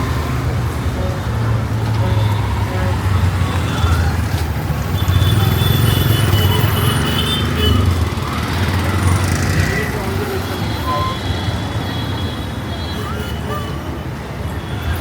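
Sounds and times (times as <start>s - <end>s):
motorcycles: 0.0s - 12.0s
street traffic: 0.0s - 15.0s.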